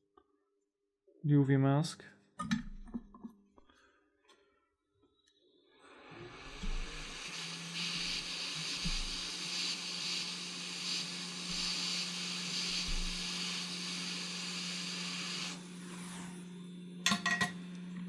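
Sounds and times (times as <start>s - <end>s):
air hissing from nozzle: 6.4s - 16.3s.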